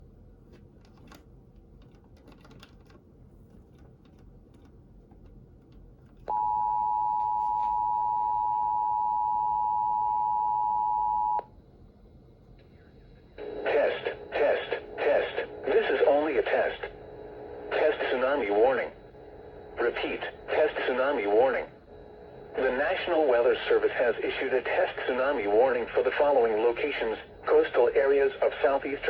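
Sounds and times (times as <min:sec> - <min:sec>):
person reading an alert: 0:13.4 - 0:29.0.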